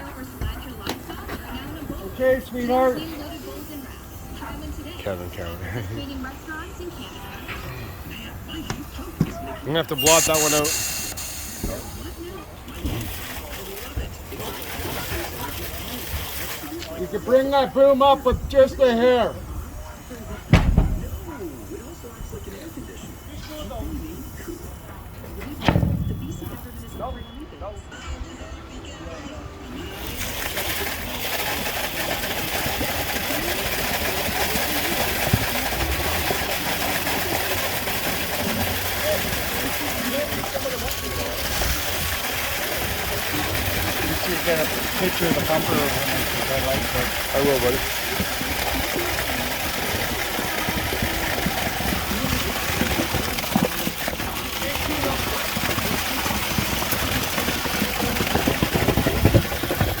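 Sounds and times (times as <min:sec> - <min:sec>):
pump engine running: 0:07.6 - 0:22.2, 0:29.8 - 1:00.0
sharp knock: 0:20.5 - 0:21.1.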